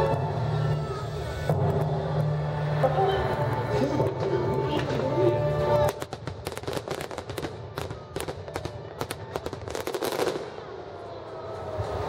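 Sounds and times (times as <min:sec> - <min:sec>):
firework pops and bangs: 0:05.8 - 0:10.6.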